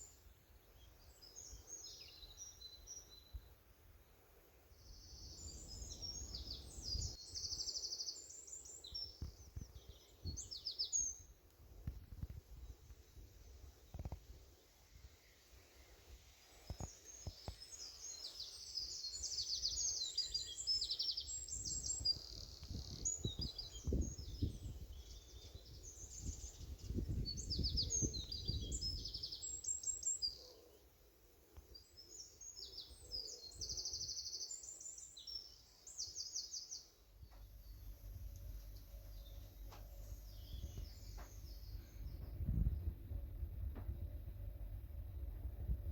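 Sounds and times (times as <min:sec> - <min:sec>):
songbirds trilling: 0:04.1 - 0:45.8
low rumble: 0:37.2 - 0:45.9.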